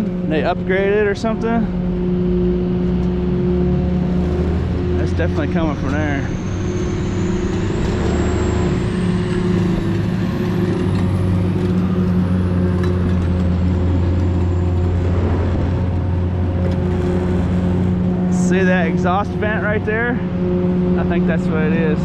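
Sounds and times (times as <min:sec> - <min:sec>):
exhaust blower fan humming: 0:00.0 - 0:22.0.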